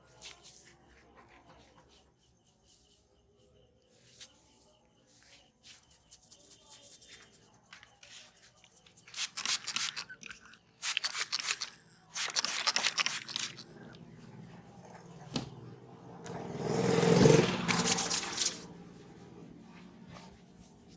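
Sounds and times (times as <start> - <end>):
hands rubbing through hair: 5.2 - 10.1, 17.3 - 20.9.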